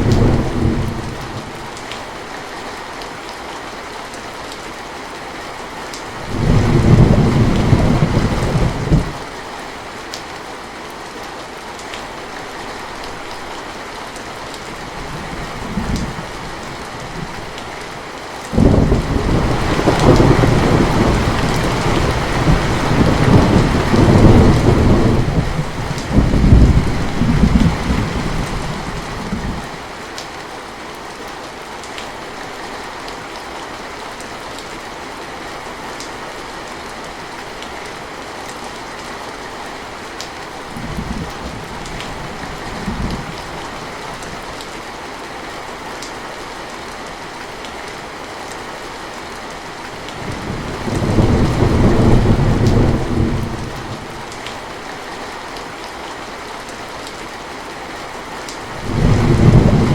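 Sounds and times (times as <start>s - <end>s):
thunder rumbling: 0.0s - 1.6s, 6.2s - 9.2s, 18.5s - 29.7s, 50.2s - 54.2s, 58.7s - 59.9s
steady rain falling: 0.0s - 59.9s.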